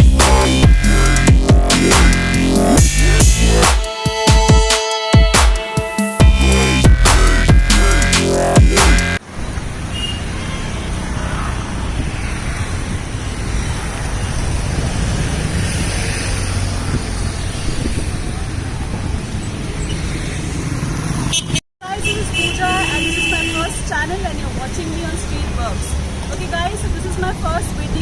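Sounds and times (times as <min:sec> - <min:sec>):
road traffic hum: 0:00.0 - 0:03.8, 0:06.2 - 0:28.0
electronic intro music: 0:00.0 - 0:09.2.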